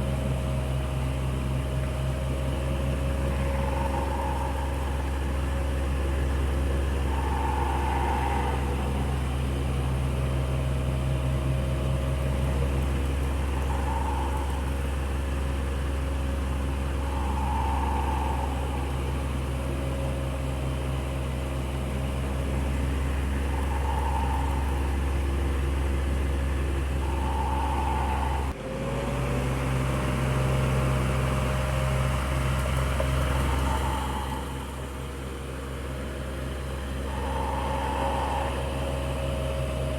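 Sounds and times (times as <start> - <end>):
electric fan humming: 0.0 - 28.6
fan whirr: 0.0 - 39.9.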